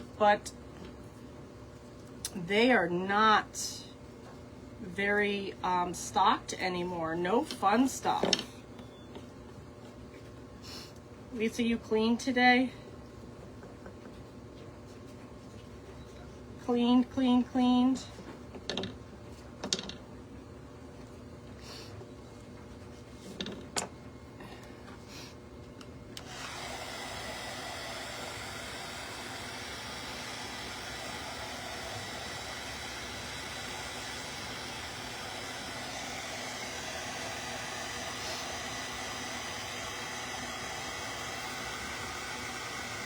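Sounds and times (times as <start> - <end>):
electric blower whooshing and whining: 26.2 - 43.0.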